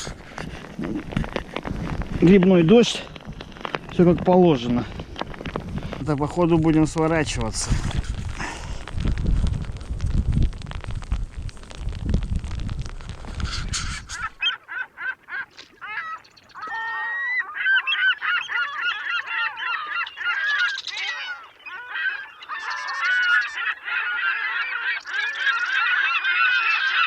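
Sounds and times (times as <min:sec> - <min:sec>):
wind noise on microphone: 0:00.0 - 0:14.6
birds honking: 0:13.5 - 0:27.0.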